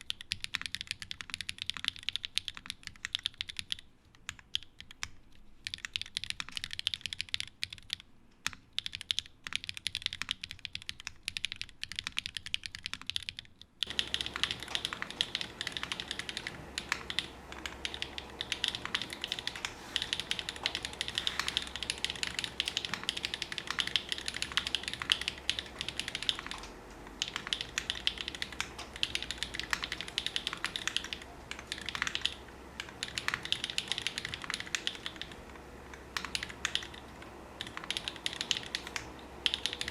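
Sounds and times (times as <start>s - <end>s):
fast typing on mechanical keyboard: 0.0s - 39.9s
room noise: 12.8s - 39.9s
steady low hum: 13.8s - 39.9s.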